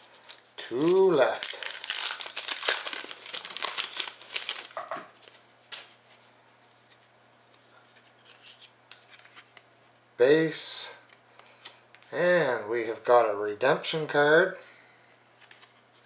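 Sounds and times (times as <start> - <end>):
wrapper tearing and crinkling: 0.0 - 5.3
cards rustling and clicking: 0.0 - 5.9, 6.8 - 9.7.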